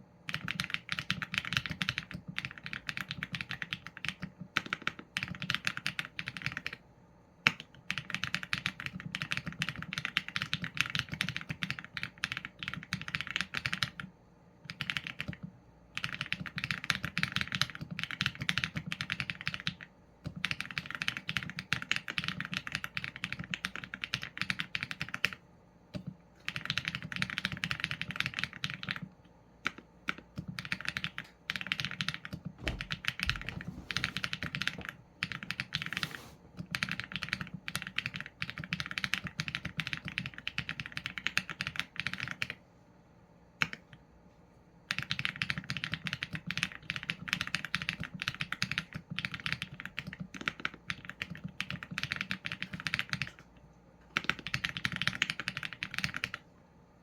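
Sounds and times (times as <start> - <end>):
mechanical keyboard keys clacking: 44.9 - 53.4, 54.2 - 56.4.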